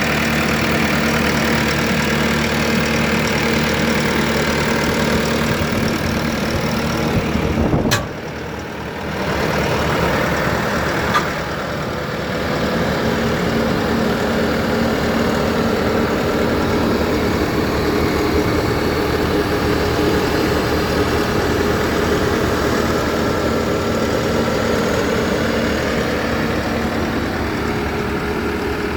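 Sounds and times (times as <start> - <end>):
diesel engine running: 0.0 - 28.9
sharp click: 7.8 - 8.3.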